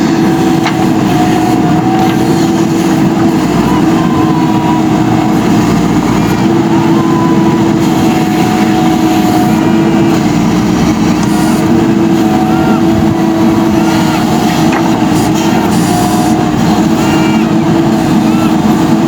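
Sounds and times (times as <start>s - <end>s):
backhoe diesel engine running: 0.0s - 19.0s.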